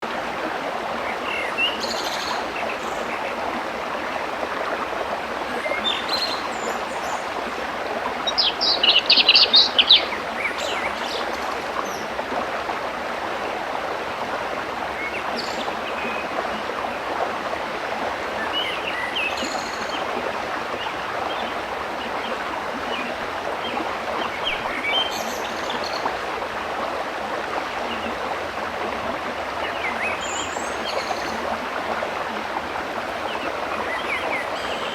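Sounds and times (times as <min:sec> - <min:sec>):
birds chirping: 0:18.3 - 0:20.0.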